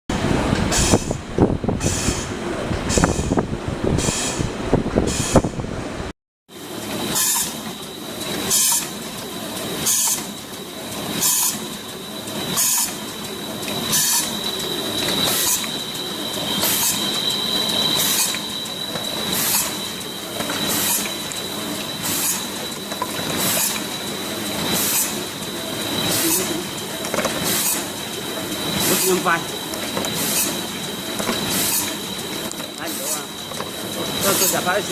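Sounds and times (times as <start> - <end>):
machine high whine: 6.5 - 34.9.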